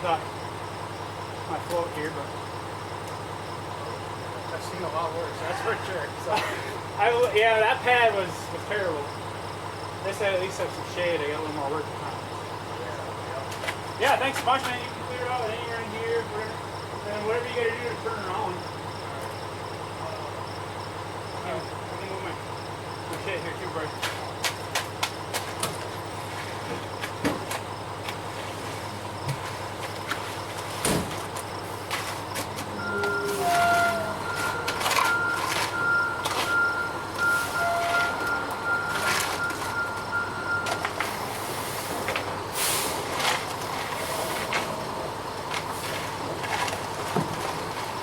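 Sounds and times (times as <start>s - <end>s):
concrete truck running: 0.0s - 48.0s
steady high tone: 17.2s - 19.4s, 32.6s - 41.5s.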